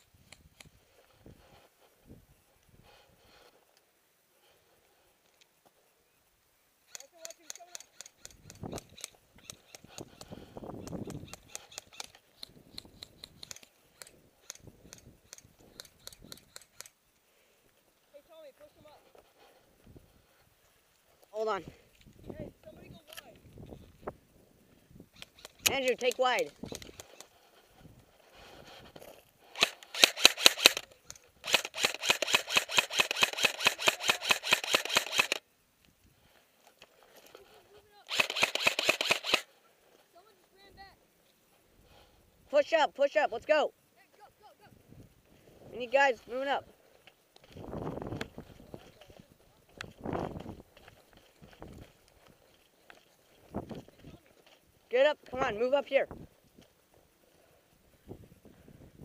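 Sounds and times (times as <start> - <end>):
rustling movement: 6.9 - 42.3, 44.0 - 59.0
airsoft guns firing: 29.6 - 35.4, 38.1 - 39.5.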